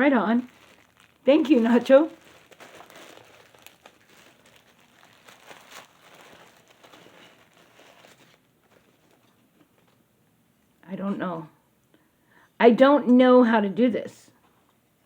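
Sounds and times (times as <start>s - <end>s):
packaging crinkling: 0.0s - 10.0s.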